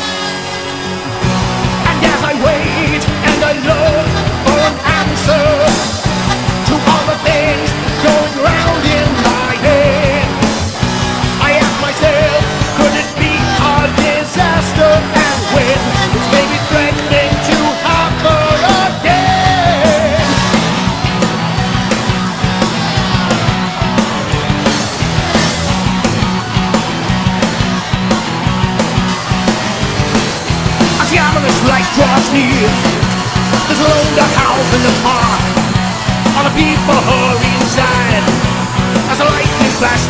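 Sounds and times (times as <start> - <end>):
wavering lead melody: 0.0 - 40.0
drum beat: 1.2 - 40.0
person singing: 1.8 - 20.9, 30.8 - 40.0.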